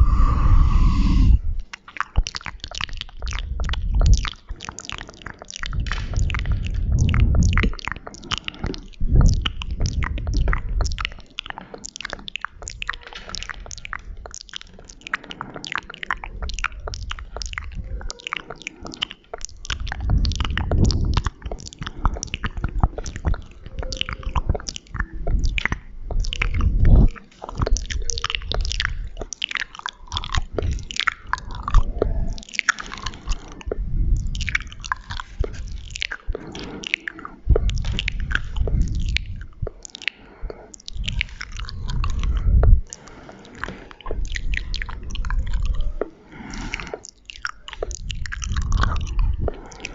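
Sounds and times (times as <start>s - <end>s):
low rumble: 0.0s - 1.6s, 5.7s - 7.9s
wet mouth clicks and smacks: 0.0s - 49.9s.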